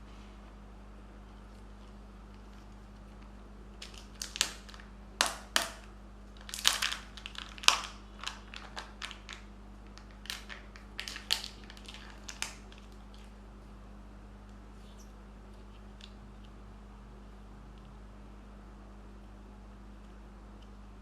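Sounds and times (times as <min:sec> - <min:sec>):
foil and plastic crinkling: 0:03.8 - 0:05.4, 0:06.4 - 0:13.4.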